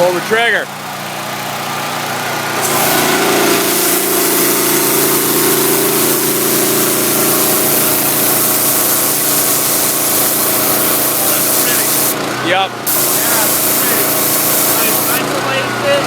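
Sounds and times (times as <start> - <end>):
pressure washer engine running: 0.0 - 16.0
high-pressure water spray hissing: 2.6 - 12.2, 12.9 - 15.3.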